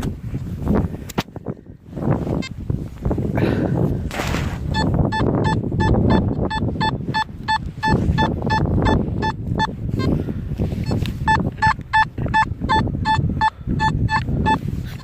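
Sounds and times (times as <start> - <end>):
metal detector beeping: 4.7 - 15.0.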